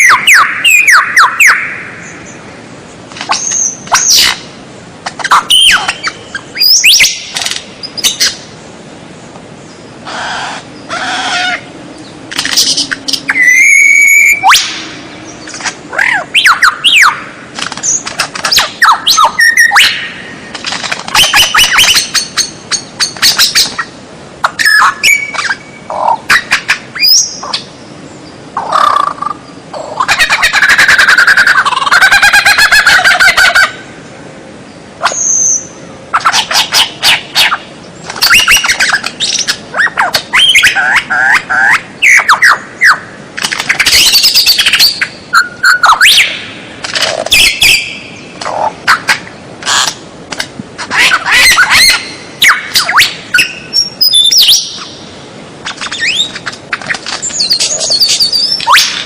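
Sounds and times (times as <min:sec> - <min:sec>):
songbird singing whistles: 0:05.3 - 0:07.3, 0:12.6 - 0:14.8, 0:17.8 - 0:20.2, 0:24.6 - 0:25.8, 0:51.5 - 0:54.9, 0:55.8 - 0:56.4, 0:57.2 - 0:59.0.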